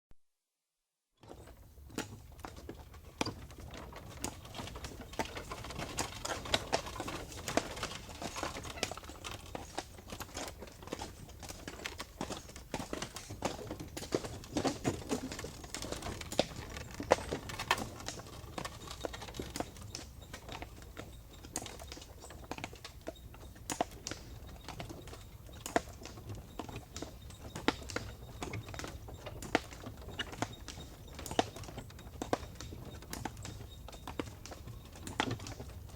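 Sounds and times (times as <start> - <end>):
horse hooves clip-clopping: 1.2 - 35.9.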